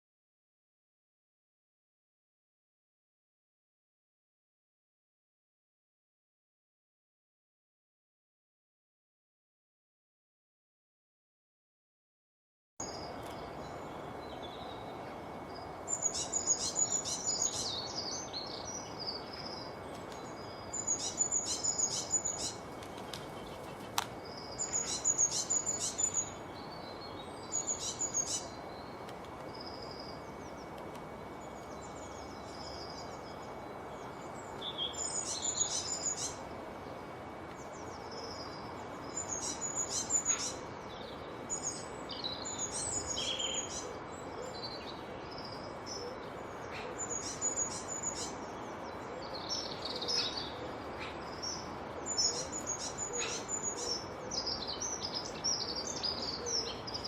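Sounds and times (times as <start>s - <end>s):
songbird chirping: 12.8s - 57.0s
steady background hiss: 12.8s - 57.0s.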